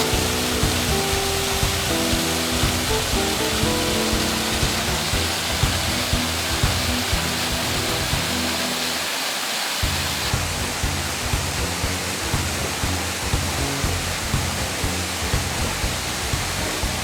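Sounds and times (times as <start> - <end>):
music with low beat: 0.0 - 8.7, 9.8 - 17.0
waterfall rushing: 0.0 - 17.0.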